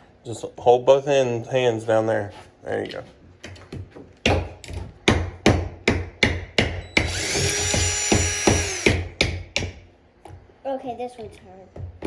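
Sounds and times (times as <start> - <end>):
hammer striking nail: 4.3 - 9.9
cordless drill running: 7.0 - 9.0.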